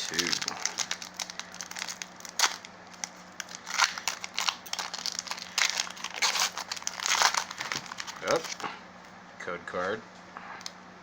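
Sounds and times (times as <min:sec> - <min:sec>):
foil wrapper crinkling: 0:00.0 - 0:08.6.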